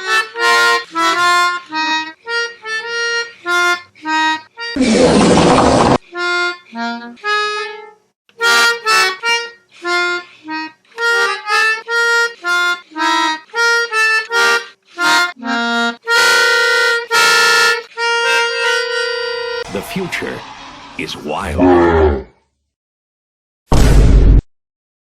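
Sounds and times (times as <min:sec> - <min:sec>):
reedy instrumental melody: 0:00.0 - 0:04.8, 0:06.1 - 0:21.2
held chord: 0:08.4 - 0:20.4.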